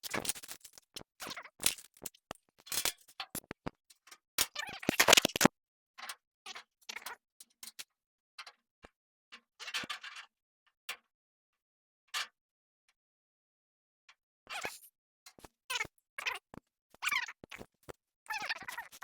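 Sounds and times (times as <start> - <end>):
hard parts clicking and rattling: 0.0 - 3.7.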